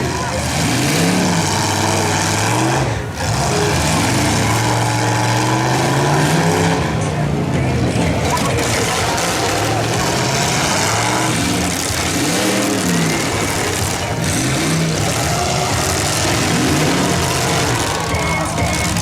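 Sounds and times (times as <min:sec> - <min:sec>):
car engines revving hard: 0:00.0 - 0:19.0.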